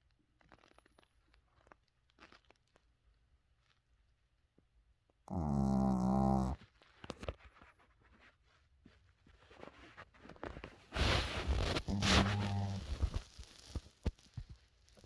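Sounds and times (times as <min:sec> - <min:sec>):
breathy rasping snore: 0:05.3 - 0:06.6, 0:11.6 - 0:13.2
loud pitched snore: 0:05.3 - 0:06.6, 0:11.6 - 0:13.1.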